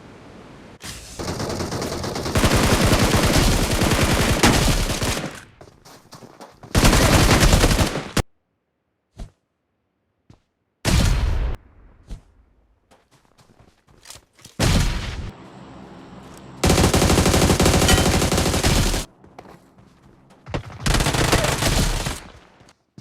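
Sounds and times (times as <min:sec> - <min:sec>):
automatic gunfire bursts: 0:01.2 - 0:05.4, 0:06.8 - 0:08.2, 0:16.6 - 0:19.1, 0:20.8 - 0:22.4.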